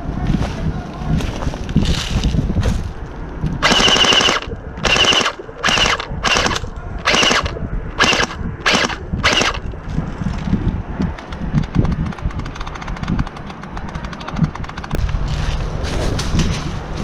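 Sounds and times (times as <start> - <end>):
wind buffeting microphone: 0.0 - 17.0
airsoft rifle bursts: 3.6 - 9.7.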